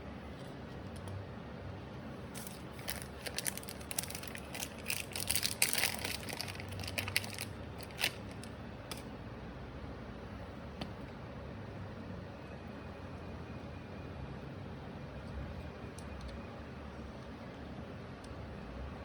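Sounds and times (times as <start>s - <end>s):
small clicks and plastic crinkling: 2.4s - 9.1s.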